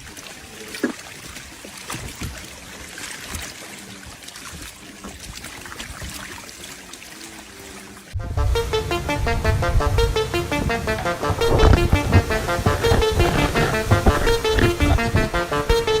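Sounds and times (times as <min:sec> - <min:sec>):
water splashing and rushing: 0:00.0 - 0:16.0
background music: 0:08.2 - 0:16.0.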